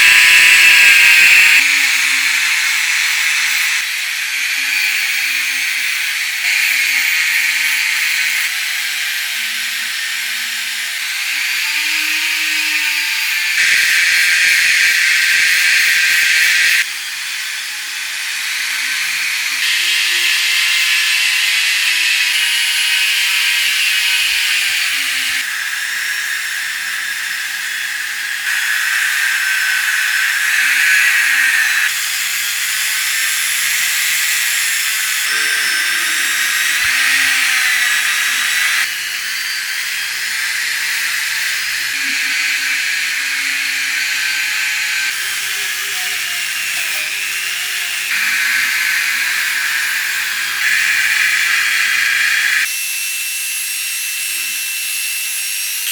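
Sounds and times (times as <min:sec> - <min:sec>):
wavering motor tone: 0:00.0 - 0:03.8, 0:11.7 - 0:16.9, 0:28.5 - 0:31.9, 0:34.8 - 0:38.9, 0:48.0 - 0:52.7
high-pitched tool hiss: 0:00.0 - 0:55.0.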